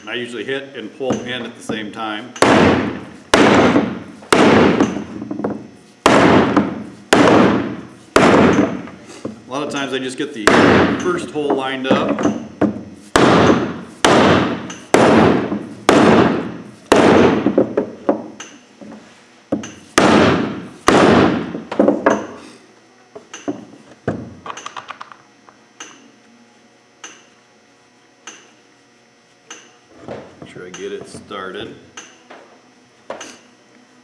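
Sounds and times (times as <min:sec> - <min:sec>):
hammer striking metal wheel: 0:02.4 - 0:05.1.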